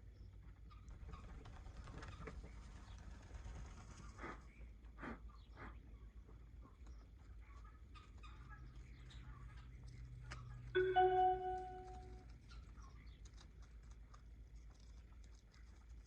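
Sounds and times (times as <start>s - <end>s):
short clear tone: 10.8s - 12.2s.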